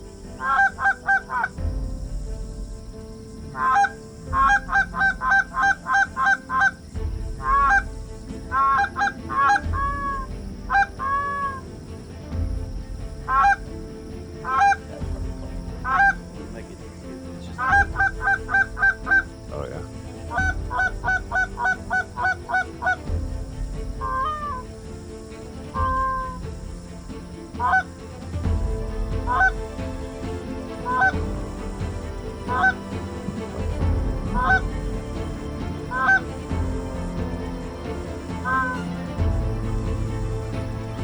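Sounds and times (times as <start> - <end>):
goose call honks and clucks: 0.4 - 1.5, 3.6 - 6.8, 7.4 - 7.9, 8.5 - 11.6, 13.3 - 13.6, 14.4 - 14.9, 15.8 - 16.2, 17.6 - 19.3, 20.3 - 23.0, 24.0 - 24.6, 25.8 - 26.4, 27.6 - 27.9, 29.3 - 29.6, 30.8 - 31.2, 32.5 - 32.8, 34.4 - 34.7, 35.9 - 36.3, 38.4 - 38.8.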